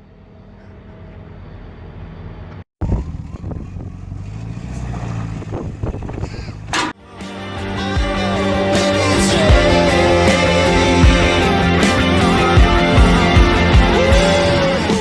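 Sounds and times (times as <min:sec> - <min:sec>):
harvest machinery engine humming: 0:00.0 - 0:07.0.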